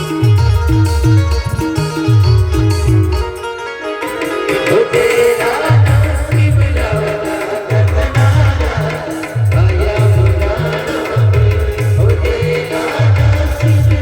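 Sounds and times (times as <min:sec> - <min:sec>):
band melody line: 0:00.0 - 0:14.0
deep drum beat: 0:05.0 - 0:14.0.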